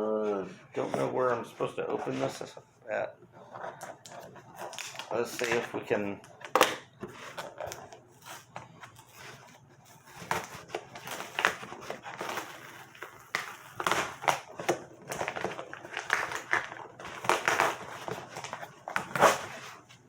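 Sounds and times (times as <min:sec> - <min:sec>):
cardboard crunching and crinkling: 0:03.4 - 0:20.0.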